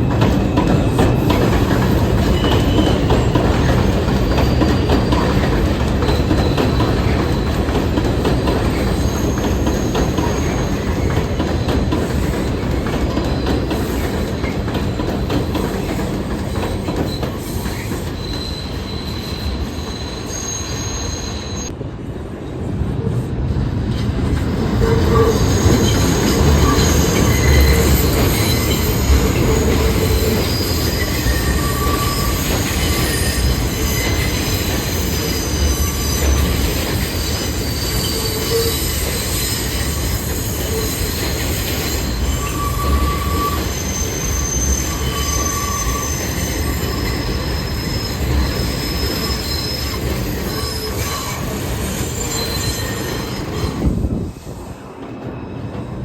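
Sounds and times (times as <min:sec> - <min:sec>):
subway train rumble: 0:00.0 - 0:56.0
wheel squeal: 0:01.0 - 0:21.7, 0:24.8 - 0:54.0.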